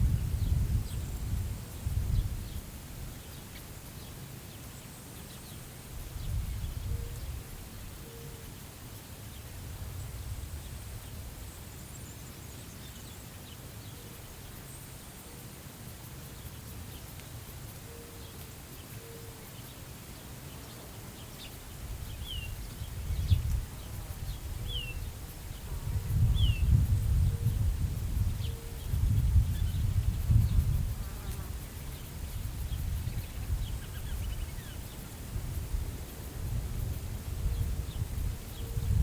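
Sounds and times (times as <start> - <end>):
wind buffeting microphone: 0.0 - 3.2, 6.0 - 7.5, 21.9 - 39.0.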